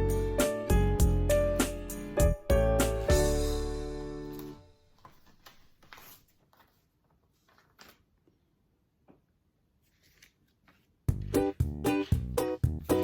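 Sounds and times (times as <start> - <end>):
background music: 0.0 - 4.8, 11.1 - 13.0.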